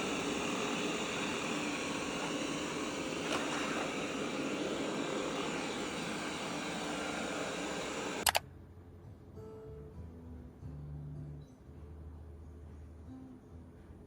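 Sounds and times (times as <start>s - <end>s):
motor blowing air: 0.0s - 8.4s.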